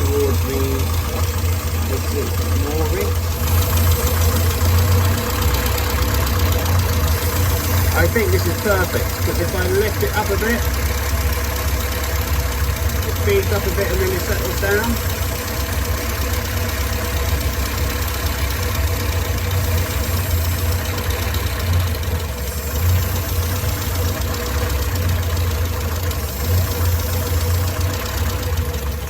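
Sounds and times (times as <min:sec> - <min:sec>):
car engine idling: 0:00.0 - 0:29.0.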